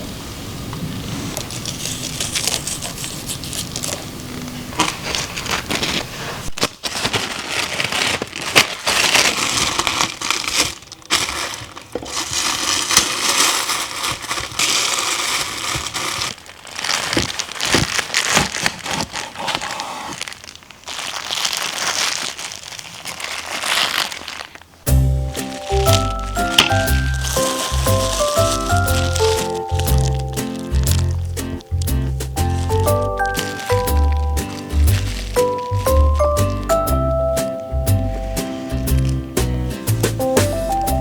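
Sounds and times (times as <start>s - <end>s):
crinkling and rustling with crackles: 0.7s - 41.0s.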